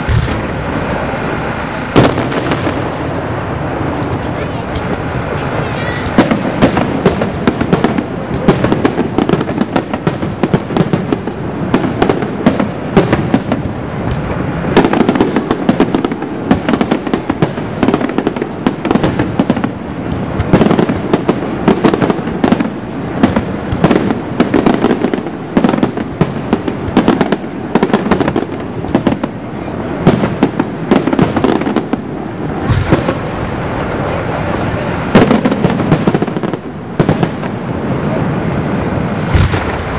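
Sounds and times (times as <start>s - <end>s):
steady rumble: 0.0s - 9.2s
fireworks bursts and cracks: 0.0s - 39.9s.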